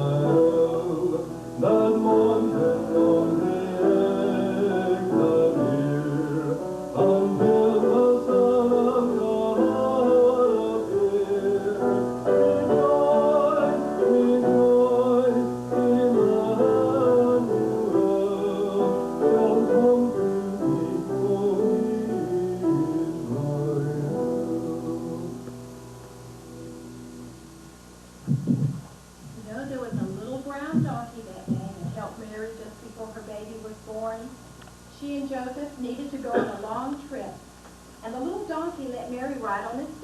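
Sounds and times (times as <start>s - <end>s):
person singing: 0.0s - 25.6s
piano accompaniment: 0.0s - 28.9s.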